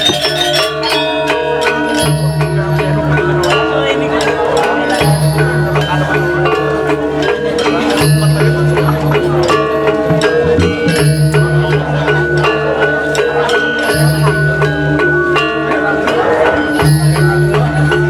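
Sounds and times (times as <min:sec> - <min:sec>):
gamelan metallophone melody: 0:00.0 - 0:18.0.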